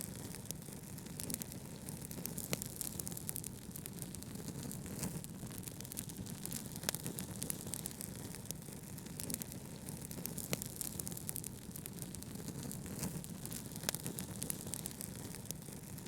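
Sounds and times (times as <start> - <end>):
wood fire crackling: 0.0 - 16.0.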